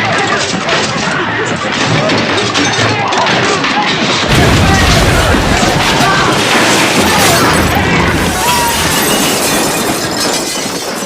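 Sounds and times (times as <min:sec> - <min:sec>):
people shouting: 0:04.3 - 0:10.4
crashes and smashing: 0:04.3 - 0:11.0.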